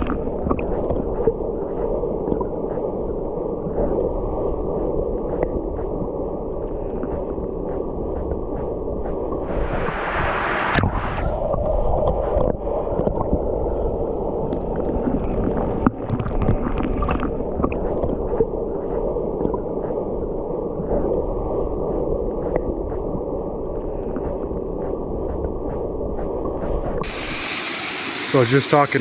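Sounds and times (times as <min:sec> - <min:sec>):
muffled waterfall rushing: 0:09.4 - 0:11.5, 0:27.0 - 0:29.0.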